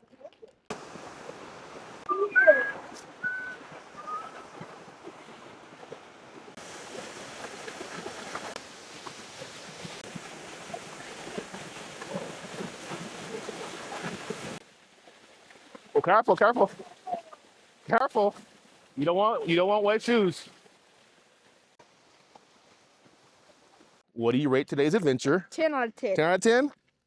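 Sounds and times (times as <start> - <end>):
waterfall rushing: 0.7 - 5.0
sliding whistle-like notes: 2.1 - 4.5.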